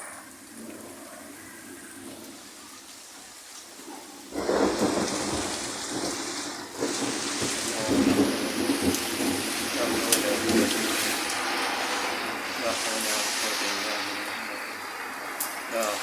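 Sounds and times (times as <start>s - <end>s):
rain falling: 0.0s - 16.0s
thunder crash and rumble: 4.3s - 14.5s.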